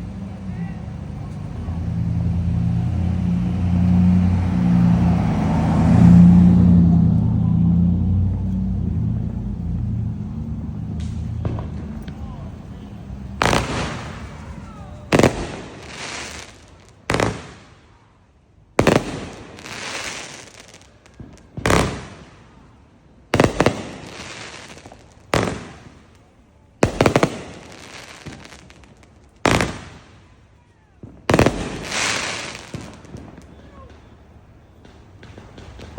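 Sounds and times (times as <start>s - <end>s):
fireworks bangs: 0.0s - 35.9s
fireworks crackling hiss: 8.3s - 35.9s.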